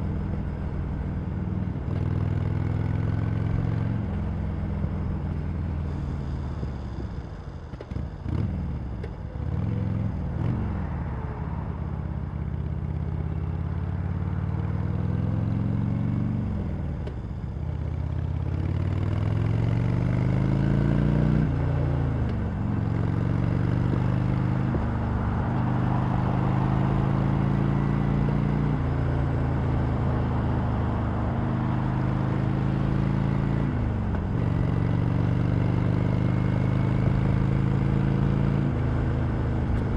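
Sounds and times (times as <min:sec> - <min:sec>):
motorcycle engine accelerating: 0:12.6 - 0:39.9
motorcycle throttle blips: 0:37.1 - 0:39.9.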